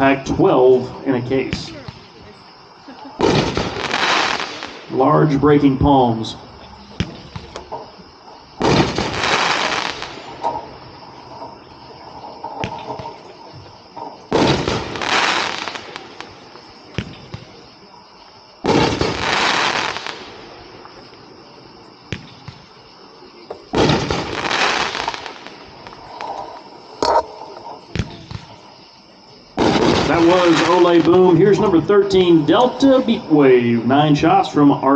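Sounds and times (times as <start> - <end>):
firework booms with rumbling tail: 3.2 - 4.9, 8.6 - 10.7, 14.2 - 16.3, 18.6 - 19.4, 23.7 - 24.5, 29.6 - 33.3
small sharp firework pops: 8.6 - 10.7, 12.5 - 17.6, 22.1 - 22.7, 23.5 - 28.6.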